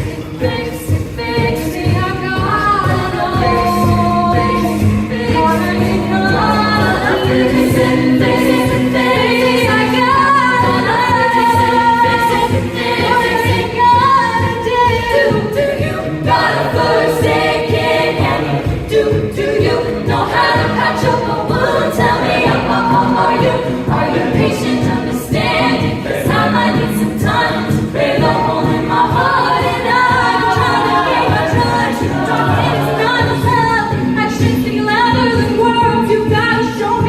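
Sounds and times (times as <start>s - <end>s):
a cappella group singing: 0.0s - 37.0s.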